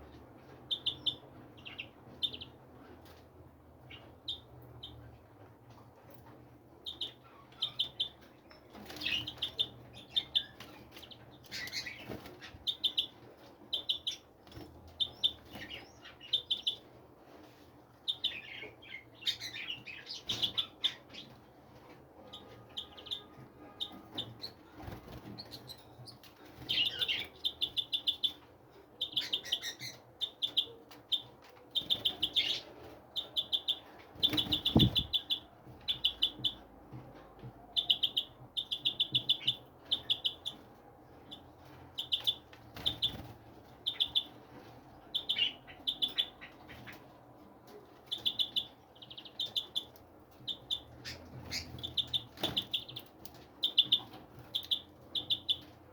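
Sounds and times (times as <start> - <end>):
small birds chirping: 0.0 - 3.2, 3.8 - 5.2, 6.1 - 21.6, 22.2 - 55.9.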